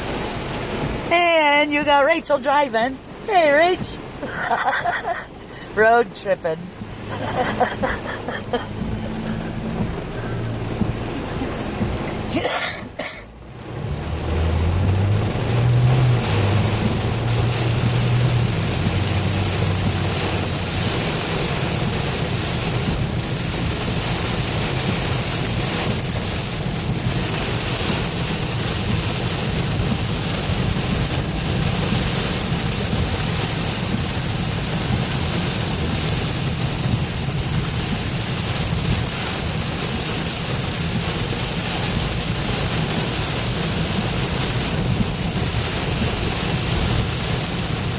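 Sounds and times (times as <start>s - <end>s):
heavy rain on car: 0.0s - 47.9s
tyres swishing through water: 0.0s - 47.9s
low hum: 6.6s - 12.4s.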